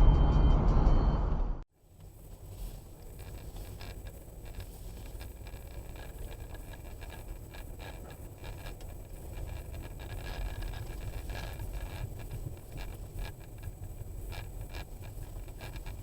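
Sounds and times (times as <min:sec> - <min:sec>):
car road rumble: 0:00.0 - 0:16.0
small clicks and rattles: 0:01.9 - 0:16.0.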